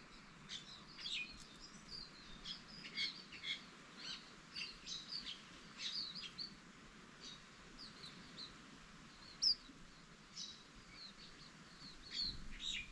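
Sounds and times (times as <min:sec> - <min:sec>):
bird high chirps: 0:09.2 - 0:09.7.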